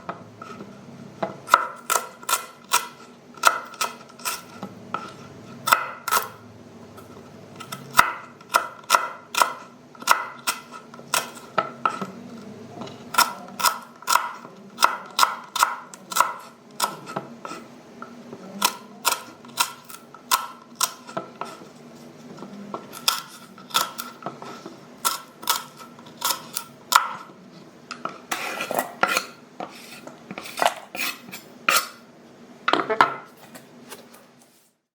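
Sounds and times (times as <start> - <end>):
knife chopping on cutting board: 1.2 - 6.4, 7.6 - 12.1, 13.0 - 17.6, 22.8 - 27.3, 28.3 - 32.0.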